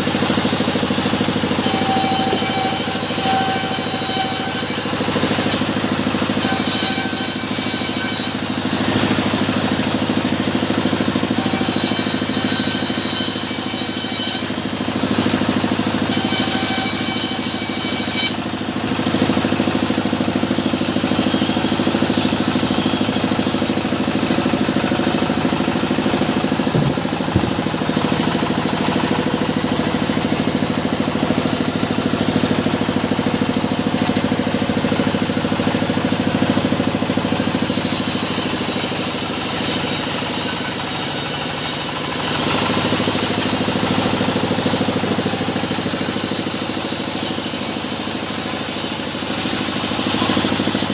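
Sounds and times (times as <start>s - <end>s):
sawmill engine running: 0.0s - 50.9s
brief knock: 26.7s - 27.6s.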